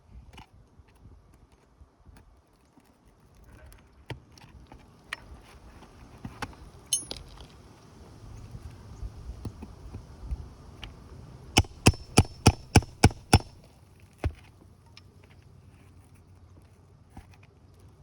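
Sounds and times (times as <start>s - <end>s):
hammer striking metal tool: 6.9s - 7.4s, 11.6s - 13.6s.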